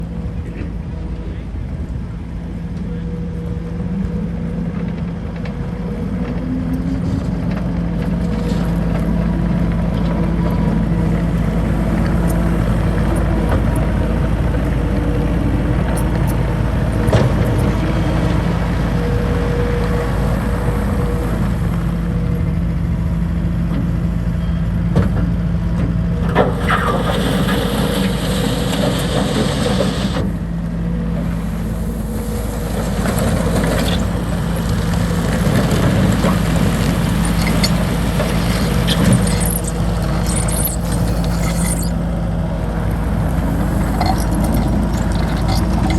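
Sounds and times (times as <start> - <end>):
diesel engine running: 0.0 - 45.9
harsh hissing rattle: 11.4 - 21.9, 26.6 - 30.4, 31.2 - 45.9.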